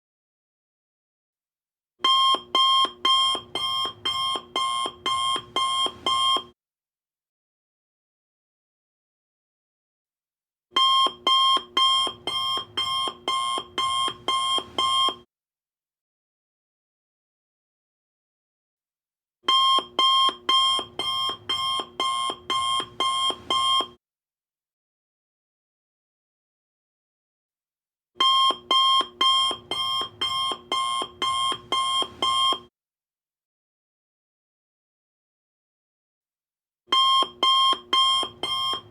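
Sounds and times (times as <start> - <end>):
electronic alarm beeping: 2.1 - 6.5, 10.8 - 15.2, 19.5 - 23.9, 28.2 - 32.6, 37.0 - 38.9.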